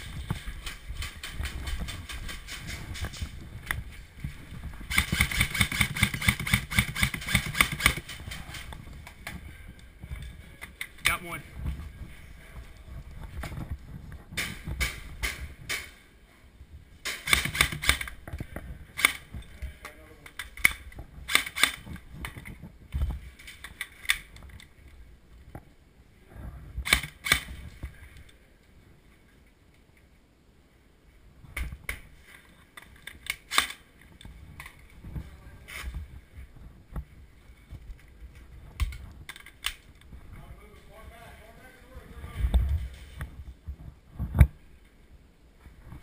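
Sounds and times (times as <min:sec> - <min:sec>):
airsoft guns firing: 0:04.8 - 0:08.4, 0:17.0 - 0:18.2.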